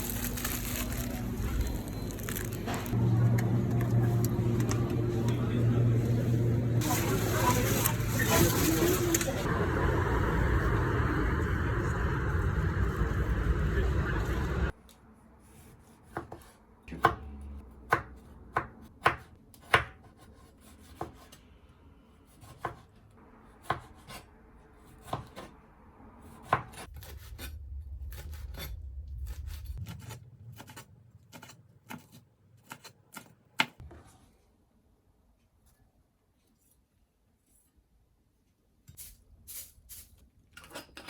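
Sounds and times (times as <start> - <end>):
low rumble: 0.0 - 14.8, 26.9 - 31.3
knife chopping on cutting board: 17.9 - 21.4, 22.4 - 22.9.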